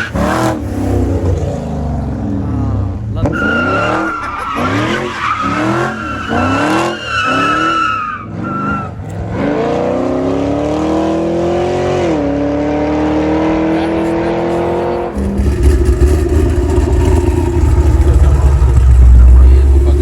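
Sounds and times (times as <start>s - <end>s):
car engine revving: 0.0s - 20.0s
tyres squealing: 3.2s - 8.9s.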